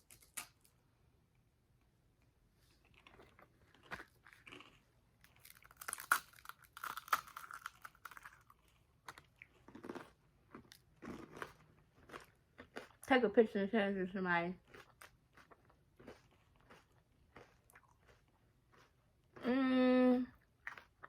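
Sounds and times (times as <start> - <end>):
crunchy ice cream chewing: 2.8 - 13.1, 14.6 - 19.5, 20.3 - 21.0.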